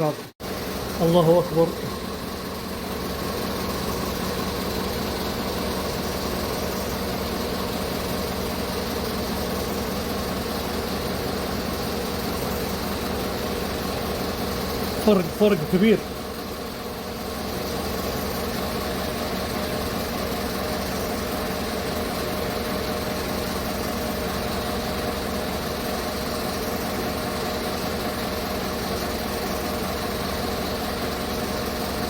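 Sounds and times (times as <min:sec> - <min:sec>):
car engine idling: 0:00.0 - 0:32.0.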